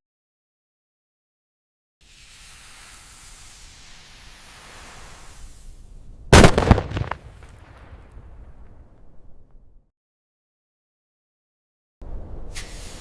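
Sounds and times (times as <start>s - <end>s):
explosion blast: 6.4s - 8.1s
crackle: 6.4s - 9.6s.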